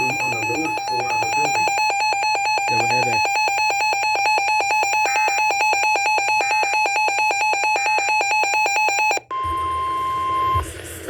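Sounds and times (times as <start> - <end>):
rapid electronic alert beeps: 0.0 - 9.5.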